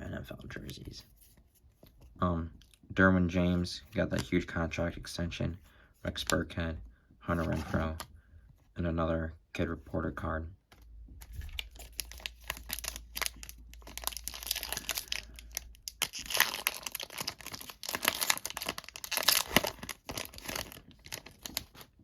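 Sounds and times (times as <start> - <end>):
plastic wrapper crinkling and tearing: 11.2 - 22.0.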